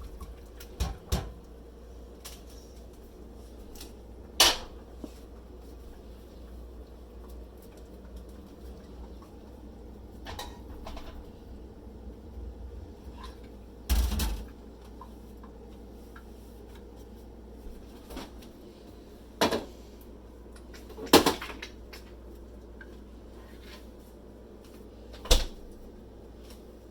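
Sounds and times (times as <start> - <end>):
low steady hum: 0.0 - 26.9
pots and cupboard doors clattering: 13.0 - 14.5.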